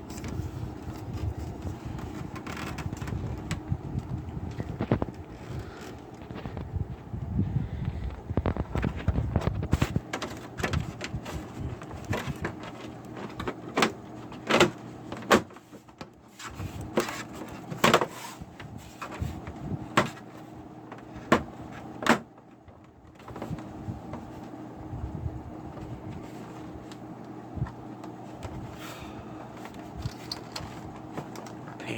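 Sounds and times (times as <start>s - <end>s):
plastic creaking and scraping: 0.0s - 7.1s, 7.9s - 24.6s, 25.7s - 31.8s
faint steady hum: 0.0s - 31.9s.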